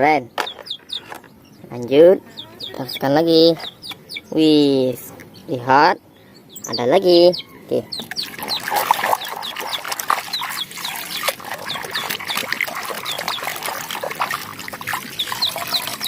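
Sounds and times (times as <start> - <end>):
hands scrubbing toy in water: 8.1 - 16.0.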